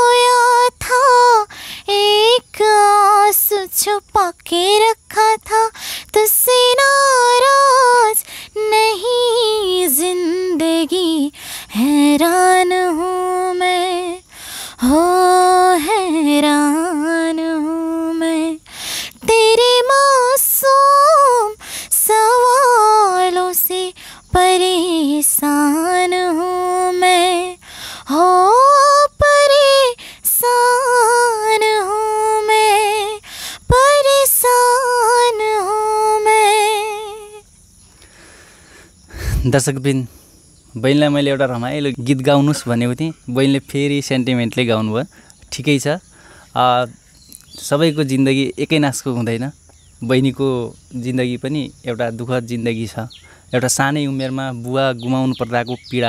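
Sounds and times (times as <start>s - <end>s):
woman singing unaccompanied: 0.0s - 37.5s.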